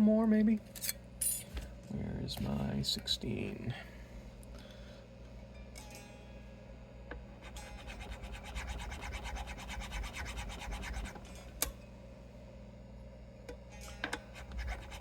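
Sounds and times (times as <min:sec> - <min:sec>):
file scraping in guitar nut slot: 0:07.4 - 0:11.2, 0:14.1 - 0:15.0.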